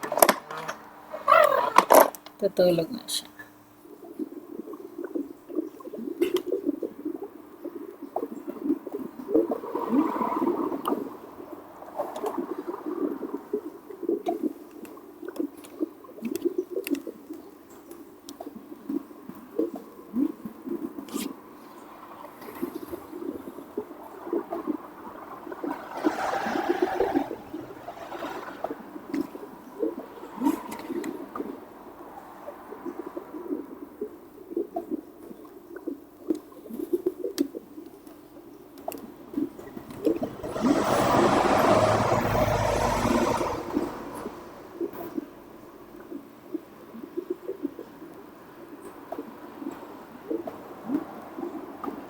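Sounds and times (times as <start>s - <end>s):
toy dolphin sleeping sounds: 0.0s - 2.2s, 19.7s - 21.4s, 25.7s - 31.6s
faint clicks: 14.1s - 19.9s, 33.5s - 40.3s
loud rushing noise: 39.8s - 44.7s.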